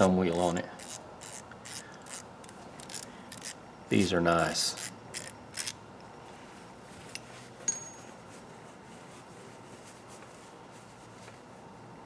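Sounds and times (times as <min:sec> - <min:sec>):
metal tools clicking: 0:00.4 - 0:05.8.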